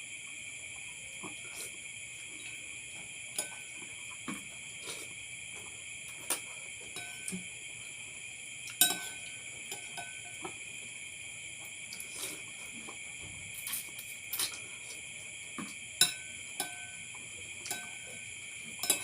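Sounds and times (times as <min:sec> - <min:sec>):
crickets chirring: 0:00.0 - 0:19.0
cutlery clinking against a dish: 0:03.3 - 0:03.8, 0:06.3 - 0:07.4, 0:08.7 - 0:10.5, 0:15.6 - 0:17.0, 0:17.6 - 0:18.2, 0:18.8 - 0:19.0.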